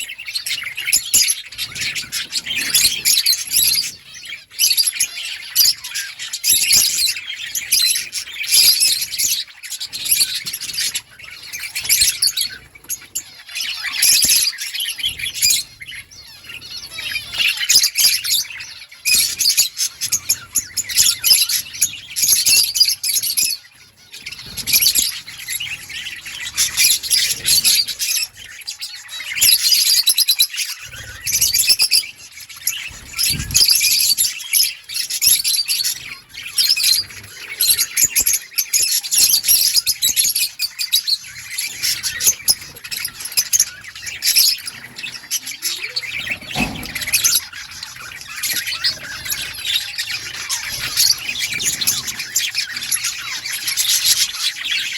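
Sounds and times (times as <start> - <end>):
budgerigars chirping and warbling: 0.0 - 54.9.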